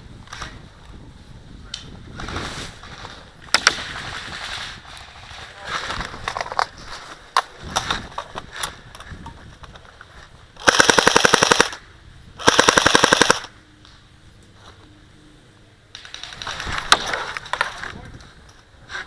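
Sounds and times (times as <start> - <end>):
airsoft gun automatic bursts: 10.6 - 11.8, 12.4 - 13.5.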